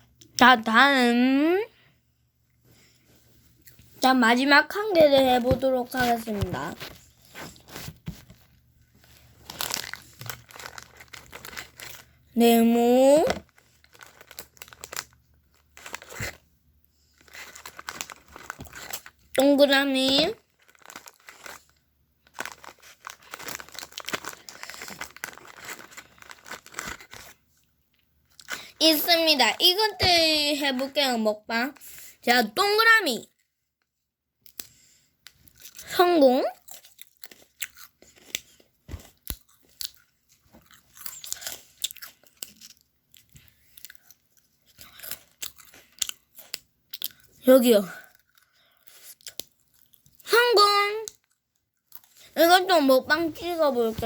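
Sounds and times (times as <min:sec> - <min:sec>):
plastic wrapper crinkling: 0:05.0 - 0:12.3, 0:13.1 - 0:16.4, 0:17.1 - 0:31.0
crunchy snack being chewed: 0:09.3 - 0:12.2, 0:13.4 - 0:16.4, 0:17.2 - 0:19.4, 0:20.4 - 0:28.8, 0:34.4 - 0:35.9, 0:36.6 - 0:47.4, 0:48.0 - 0:50.3, 0:51.0 - 0:52.4.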